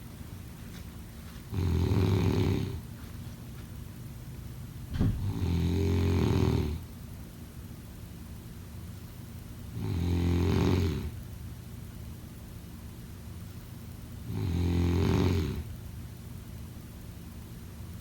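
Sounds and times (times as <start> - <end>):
person snoring: 1.6 - 2.8, 5.3 - 6.8, 9.8 - 11.1, 14.3 - 15.6.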